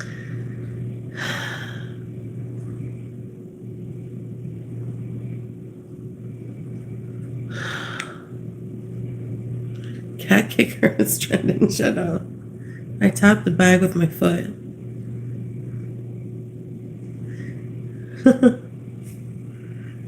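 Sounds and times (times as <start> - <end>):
steady low hum: 0.0 - 20.0
person breathing out: 1.1 - 2.0, 7.5 - 8.4.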